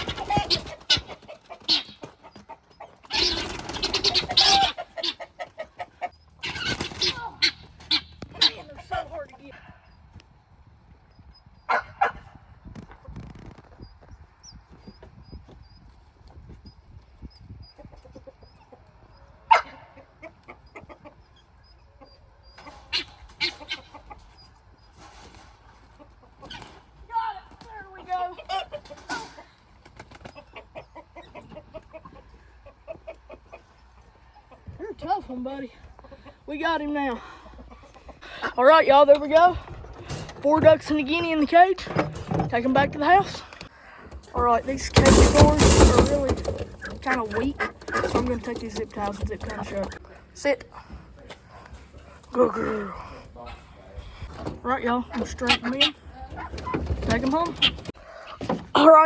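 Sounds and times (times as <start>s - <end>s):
guinea fowl alarm cackle: 0.0s - 8.8s, 17.6s - 24.6s, 30.2s - 34.7s
poultry squawking and clucking: 0.0s - 10.0s, 17.1s - 50.2s, 50.9s - 59.0s.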